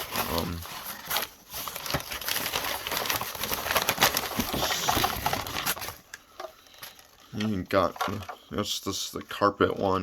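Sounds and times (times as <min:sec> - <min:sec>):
packing paper crinkling: 0:00.0 - 0:08.4.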